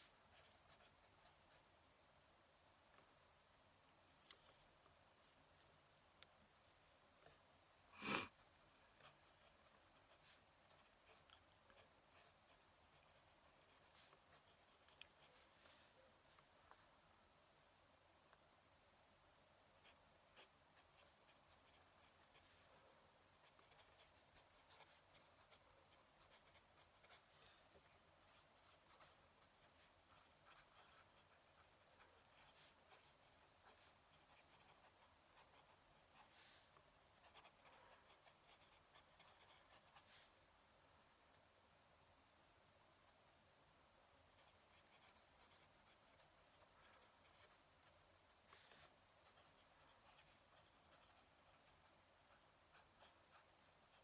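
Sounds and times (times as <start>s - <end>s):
fountain pen scratching on paper: 0.0s - 1.6s, 8.9s - 16.0s, 19.8s - 40.4s, 44.4s - 54.0s.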